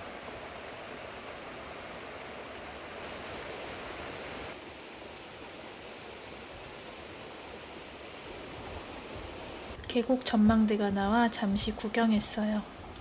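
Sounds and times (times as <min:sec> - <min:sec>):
stream rushing: 0:00.0 - 0:09.8.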